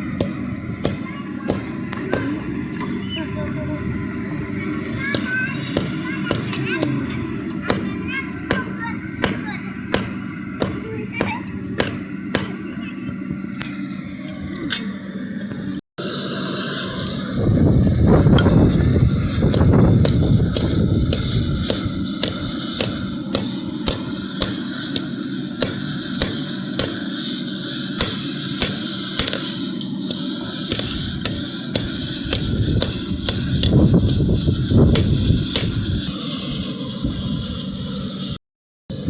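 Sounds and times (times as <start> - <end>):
hammer striking steel on anvil: 0.0 - 2.9, 5.0 - 12.9, 19.5 - 36.1
low rumble: 0.0 - 39.0.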